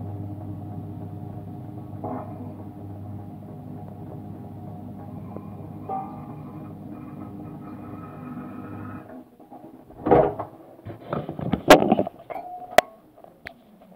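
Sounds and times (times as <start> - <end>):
dishwasher humming: 0.0 - 13.0
loud knocks and clatters: 9.9 - 12.2.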